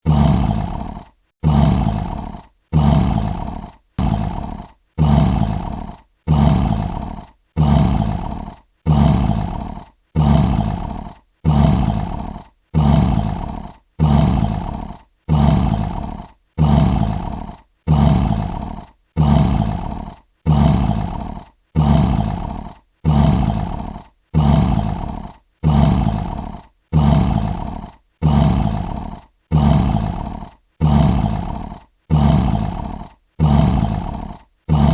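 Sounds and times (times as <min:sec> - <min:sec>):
lion roar: 0:00.0 - 0:34.9.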